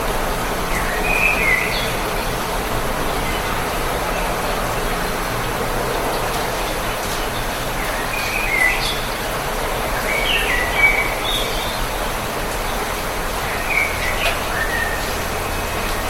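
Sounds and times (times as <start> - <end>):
steady rainfall hiss: 0.0 - 16.0
birds chirping: 10.0 - 16.0.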